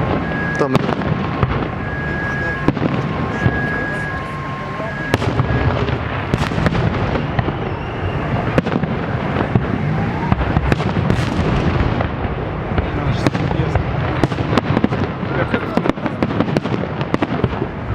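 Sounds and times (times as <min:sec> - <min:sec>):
rumble of distant explosions: 0:00.0 - 0:17.9.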